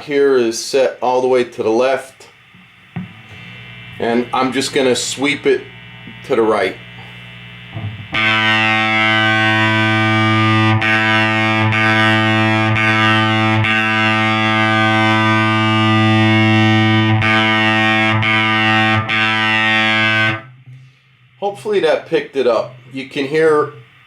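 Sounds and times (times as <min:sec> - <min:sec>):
fuzzy electric guitar note: 0:02.2 - 0:21.0.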